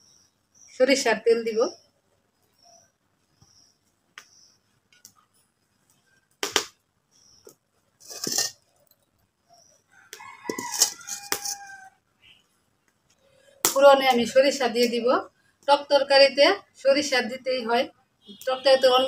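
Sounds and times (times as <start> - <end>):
kitchen utensils clattering: 8.0 - 8.6
rooster crowing: 9.9 - 12.0.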